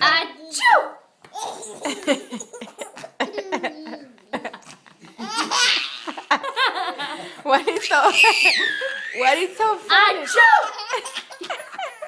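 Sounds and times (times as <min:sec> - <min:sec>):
baby laughing: 0:01.3 - 0:06.8, 0:08.0 - 0:09.4, 0:10.3 - 0:12.0.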